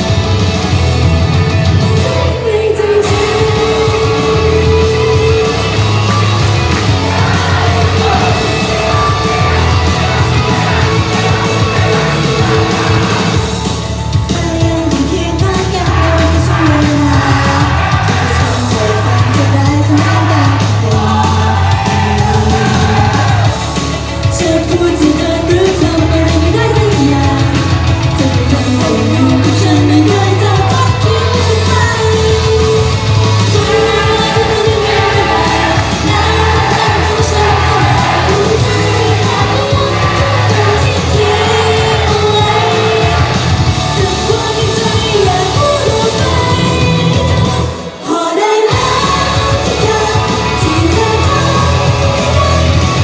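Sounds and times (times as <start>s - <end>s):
pop song over sound system: 0.0s - 53.0s
people yelling: 2.7s - 13.6s, 15.4s - 24.1s, 28.8s - 53.0s.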